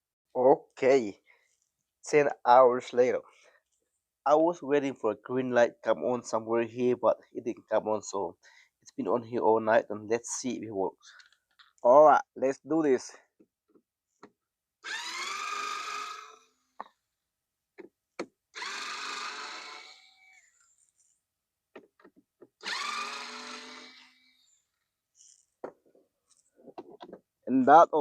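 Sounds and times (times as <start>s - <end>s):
cordless screwdriver motor whining: 14.8s - 16.6s, 18.5s - 21.0s, 22.6s - 25.6s.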